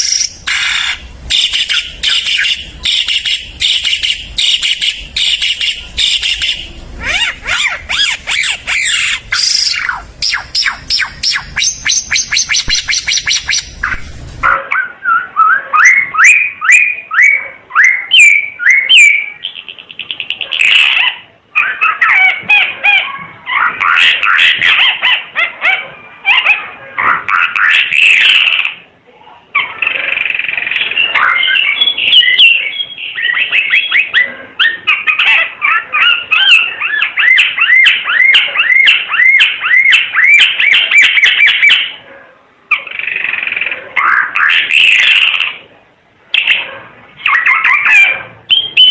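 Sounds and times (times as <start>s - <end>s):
bird whistling rising notes: 0.0s - 14.0s
harsh bird call: 0.0s - 26.4s.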